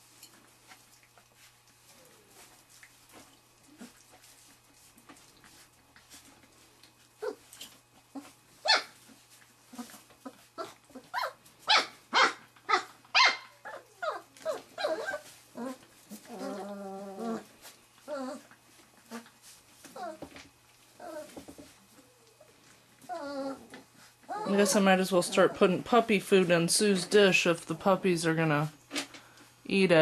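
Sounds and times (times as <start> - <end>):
puppies yipping and growling: 7.1 - 25.8
puppy drawn-out cry: 8.6 - 8.9, 10.6 - 17.4, 23.1 - 24.8.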